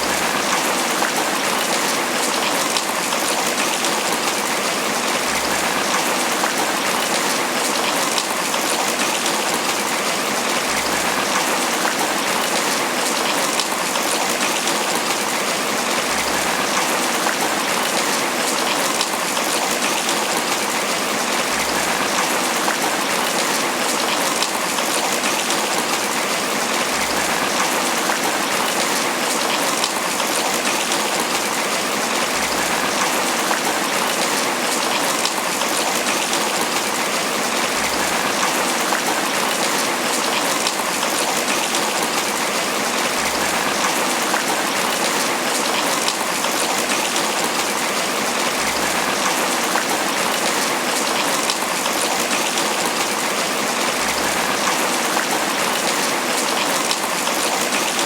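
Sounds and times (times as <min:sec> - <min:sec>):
rain pattering on leaves: 0:00.0 - 0:58.0.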